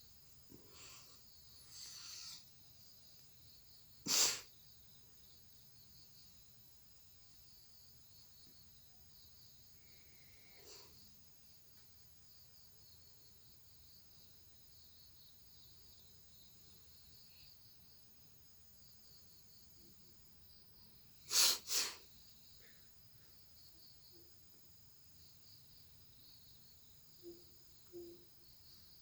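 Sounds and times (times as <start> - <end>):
person blowing nose: 4.1 - 4.4, 21.3 - 22.0.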